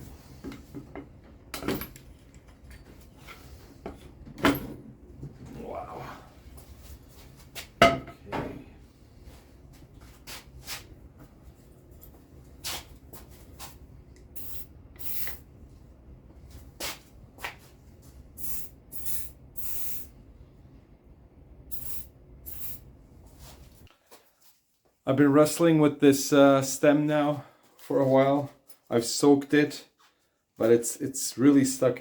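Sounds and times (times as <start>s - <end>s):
tools and parts clanking: 0.4s - 4.9s
short hissing spray bursts: 14.4s - 15.4s, 18.4s - 20.1s, 21.7s - 22.8s.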